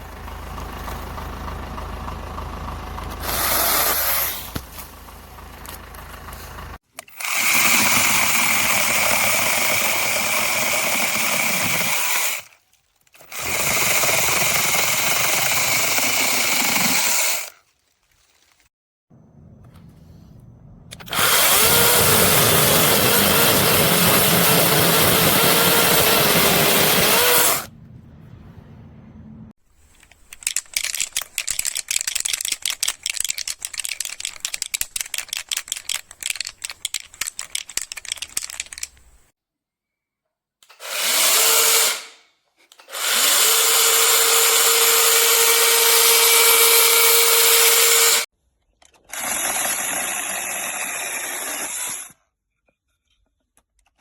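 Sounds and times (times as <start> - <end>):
mini chainsaw running: 3.2 - 4.5, 7.1 - 12.6, 13.2 - 17.5, 21.0 - 27.7, 40.7 - 42.2, 42.8 - 48.3, 49.0 - 52.2.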